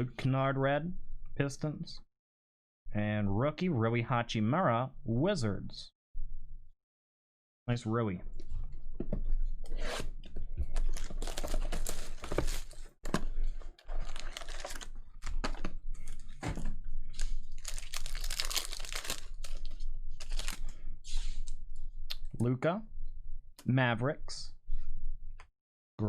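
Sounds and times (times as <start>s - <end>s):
wrapper tearing and crinkling: 13.8s - 15.3s, 17.2s - 20.6s.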